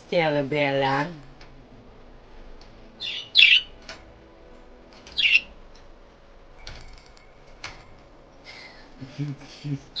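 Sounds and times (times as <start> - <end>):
budgies squawking and chirping: 3.0 - 3.7, 5.2 - 5.5.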